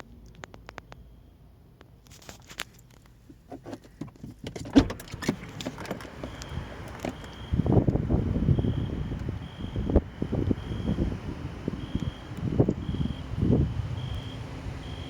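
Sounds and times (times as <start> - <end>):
wind buffeting microphone: 5.3 - 15.0.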